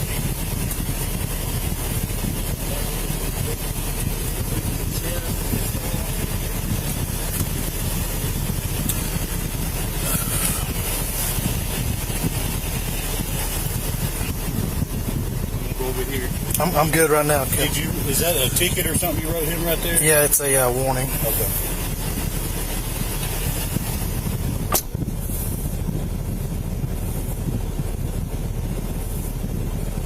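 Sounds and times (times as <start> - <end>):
vehicle engine rumbling: 0.0 - 30.0.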